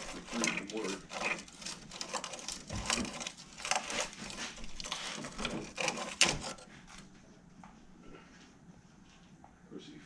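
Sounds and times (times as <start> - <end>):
items clicking and knocking: 0.0 - 7.3.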